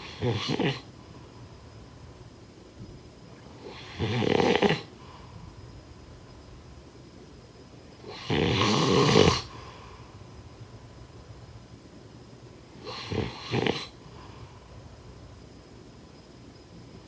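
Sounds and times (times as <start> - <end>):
person snoring: 0.0 - 0.8, 8.1 - 9.5, 12.9 - 13.9.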